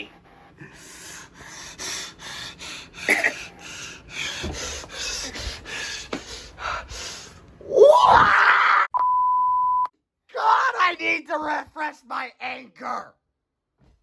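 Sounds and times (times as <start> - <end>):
breathy laughter: 3.0 - 3.7.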